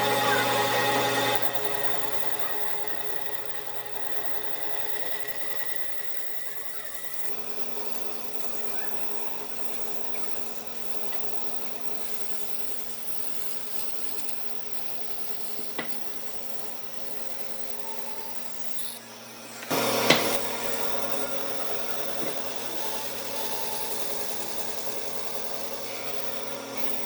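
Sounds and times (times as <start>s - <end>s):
power tool motor running: 0.0s - 27.0s.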